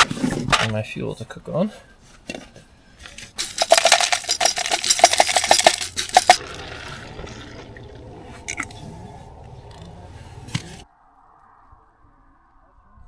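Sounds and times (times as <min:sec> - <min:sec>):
camping gear clinking and rattling: 0:02.0 - 0:06.4.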